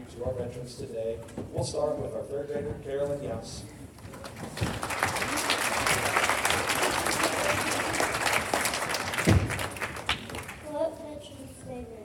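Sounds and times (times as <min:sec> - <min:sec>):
audience applauding: 0:04.1 - 0:10.7
low thump: 0:09.2 - 0:09.6.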